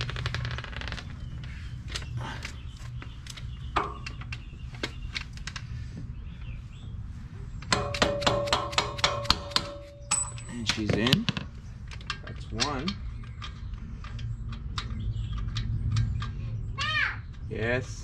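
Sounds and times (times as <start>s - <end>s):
ringing metal taps: 7.7s - 11.4s
metal clicks and knocks: 7.7s - 16.3s.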